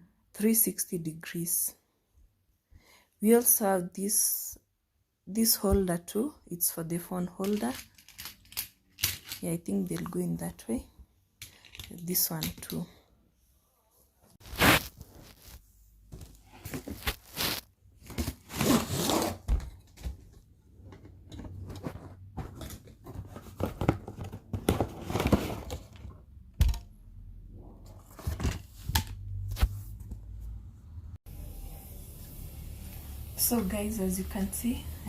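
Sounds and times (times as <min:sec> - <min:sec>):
parts scraping and knocking: 0:07.4 - 0:09.6, 0:11.4 - 0:12.8, 0:19.2 - 0:26.9
packaging rustling and crinkling: 0:14.4 - 0:20.3.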